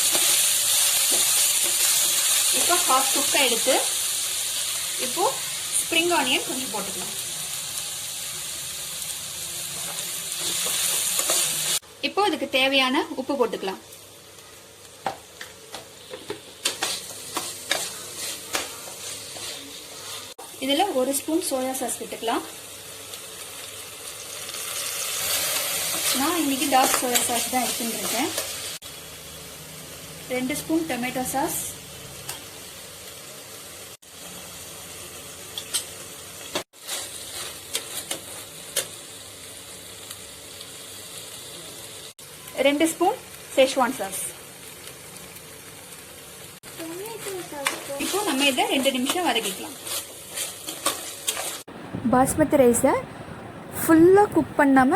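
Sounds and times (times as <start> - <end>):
vegetables sizzling in a pan: 0.0 - 52.8
spoon scraping a pan: 9.8 - 11.8, 15.7 - 20.4, 25.0 - 28.5, 35.5 - 39.0, 47.2 - 51.7
spatula scraping and knocking pan: 15.0 - 20.4, 47.2 - 51.6.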